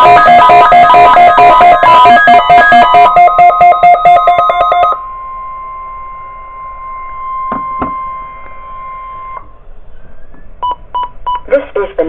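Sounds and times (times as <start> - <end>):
rapidly pulsing beep: 0.0 - 5.0
steady alarm tone: 0.0 - 9.5.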